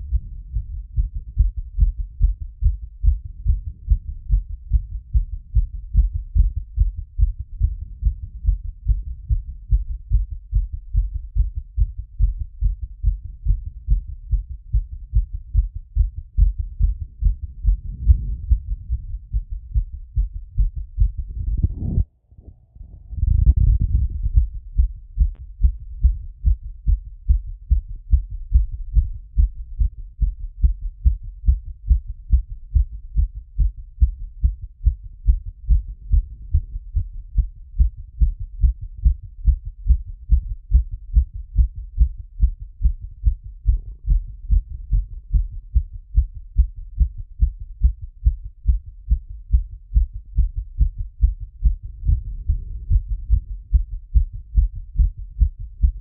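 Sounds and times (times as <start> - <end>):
heartbeat through stethoscope: 0.0 - 22.1, 22.9 - 56.0.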